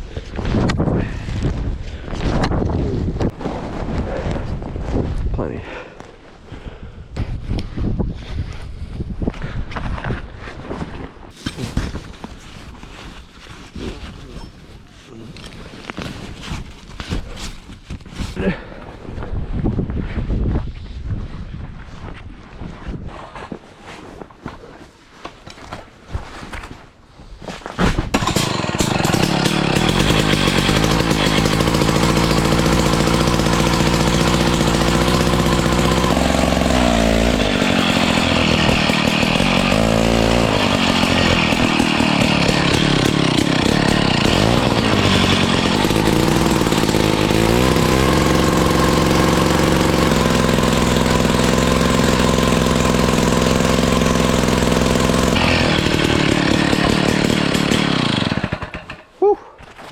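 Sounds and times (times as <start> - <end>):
ice auger engine running: 28.1 - 59.1.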